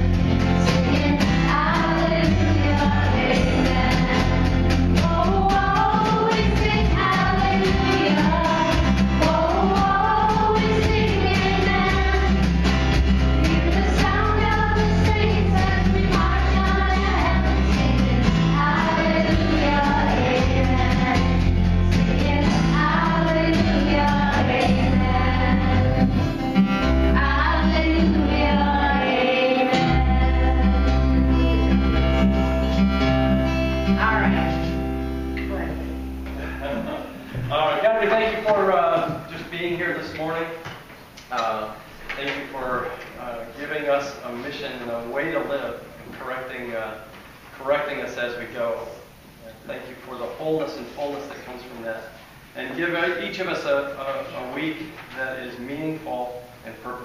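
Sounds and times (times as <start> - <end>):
steady bass line: 0.0 - 29.0, 29.8 - 37.3
voices singing worship song: 0.0 - 31.9.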